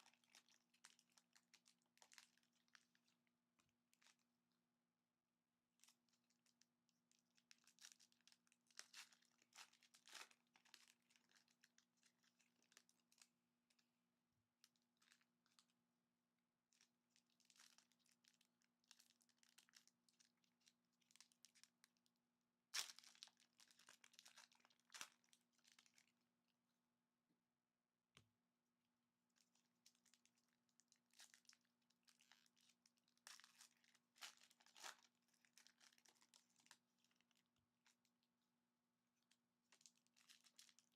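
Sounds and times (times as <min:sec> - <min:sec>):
plastic wrapping tearing and crinkling: 0:07.4 - 0:13.3, 0:17.2 - 0:21.8, 0:22.8 - 0:26.1, 0:29.8 - 0:37.3, 0:39.7 - 0:40.9.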